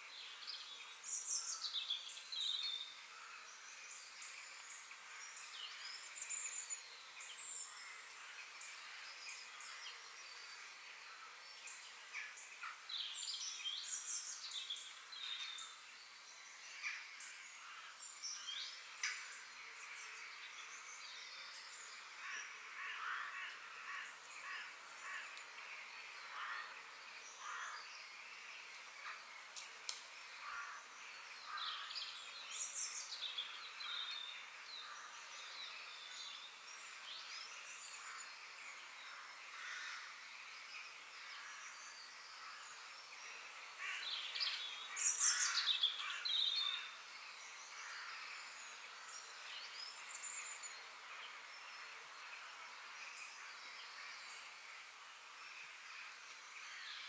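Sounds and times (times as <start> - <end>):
steady high hiss: 0.0 - 57.0.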